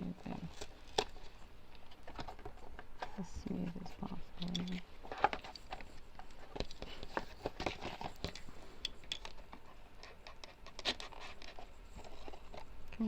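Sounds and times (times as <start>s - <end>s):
cardboard scratching and scraping: 5.0s - 8.4s, 9.4s - 12.7s.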